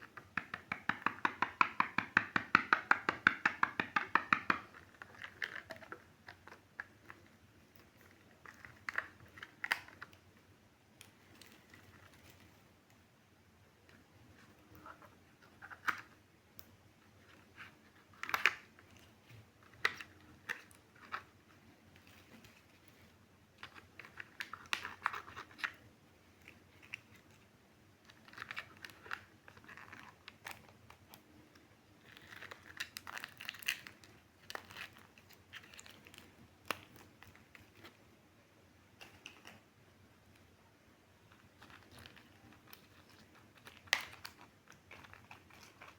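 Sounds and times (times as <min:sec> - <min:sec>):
packaging crinkling and tearing: 0:32.0 - 0:38.0, 0:41.6 - 0:45.9.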